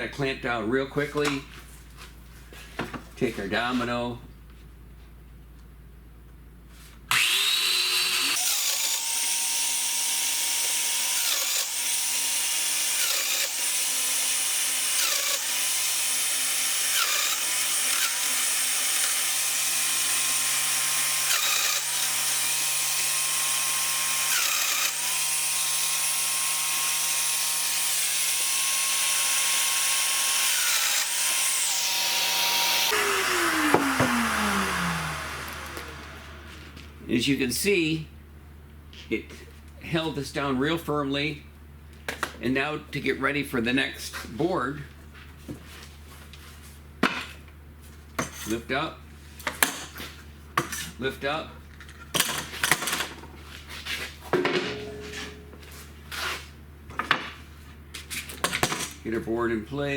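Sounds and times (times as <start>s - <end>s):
motor winding down whine: 7.1s - 9.2s, 31.6s - 36.9s
power tool cutting wood: 7.1s - 37.0s.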